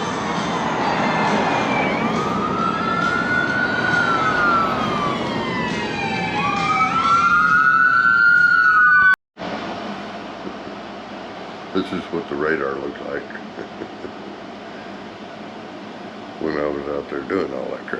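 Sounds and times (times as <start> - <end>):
emergency sirens wailing: 0.0 - 9.2
steady rush of noise: 9.4 - 17.9.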